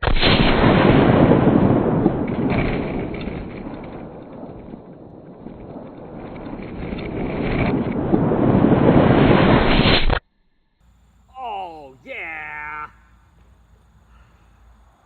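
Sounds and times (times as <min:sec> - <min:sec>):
wind buffeting microphone: 0:00.6 - 0:09.7.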